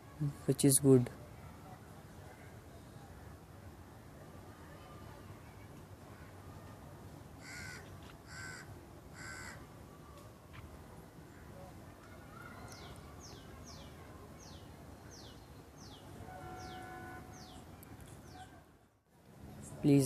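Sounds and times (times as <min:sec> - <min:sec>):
faint steady background noise: 0:00.0 - 0:20.0
bird harsh calls: 0:07.4 - 0:09.6, 0:12.4 - 0:17.7.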